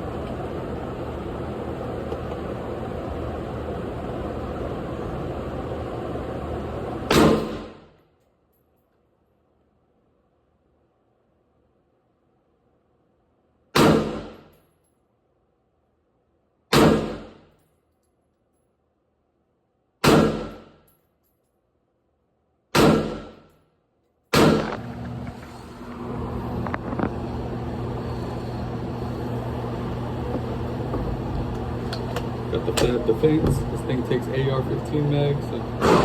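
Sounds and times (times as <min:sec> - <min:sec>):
steady background hum: 0:00.0 - 0:36.0
rifle shots: 0:07.1 - 0:07.8, 0:13.8 - 0:14.4, 0:16.7 - 0:17.4, 0:20.0 - 0:20.7, 0:22.7 - 0:23.4, 0:24.3 - 0:24.8.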